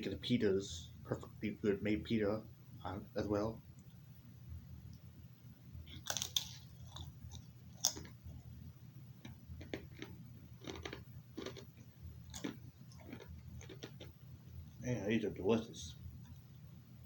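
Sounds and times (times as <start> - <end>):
man crunching chips: 5.9 - 8.2, 9.2 - 14.1.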